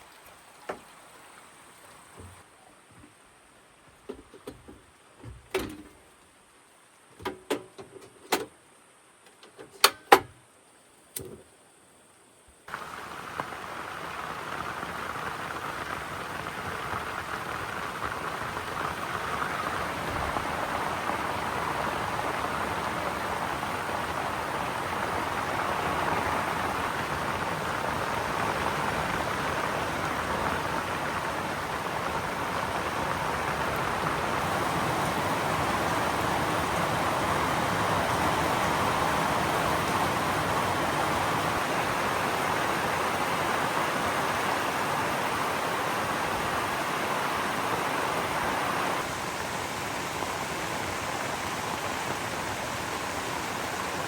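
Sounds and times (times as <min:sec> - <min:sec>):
heavy rain hissing: 0:00.0 - 0:07.2, 0:12.6 - 0:54.0.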